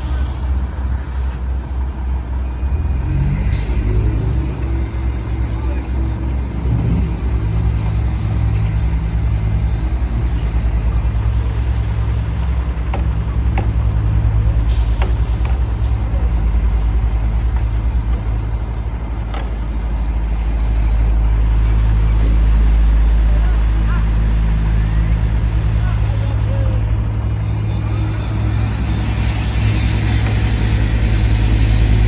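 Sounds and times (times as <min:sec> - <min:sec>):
heavy diesel engine running: 0:00.0 - 0:32.0
sharp metallic knocks: 0:12.8 - 0:16.0.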